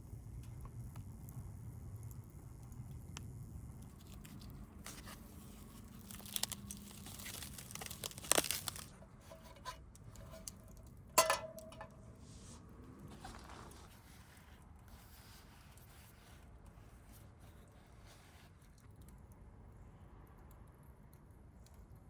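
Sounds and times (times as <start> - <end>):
plastic packaging crinkling and tearing: 3.8 - 9.7.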